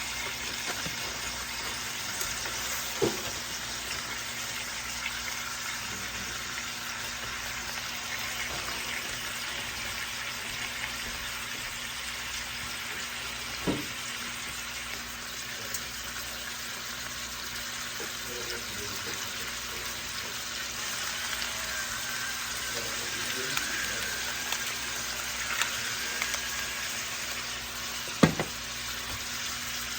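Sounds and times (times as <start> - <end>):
chicken sizzling in a pan: 0.0 - 29.9
sharp knock: 28.2 - 28.6.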